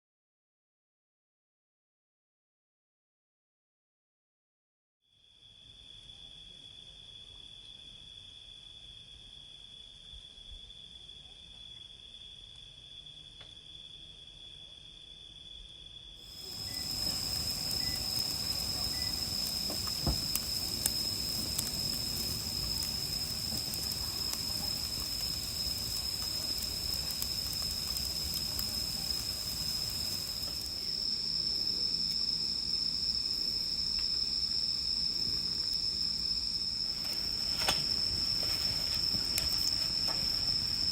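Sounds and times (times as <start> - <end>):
insects chirring: 11.7 - 40.9
faint clicks: 16.4 - 30.7.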